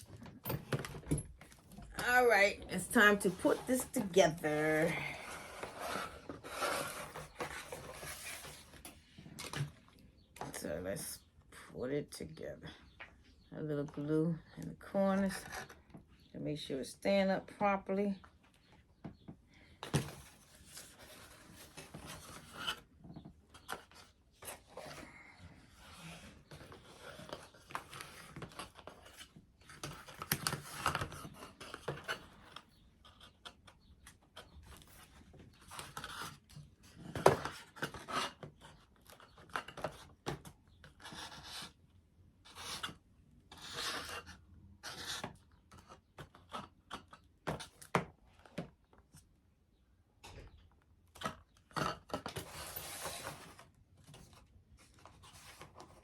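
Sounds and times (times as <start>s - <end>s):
foam board rubbing and scraping: 2.8s - 8.8s, 42.4s - 45.8s, 51.8s - 53.7s.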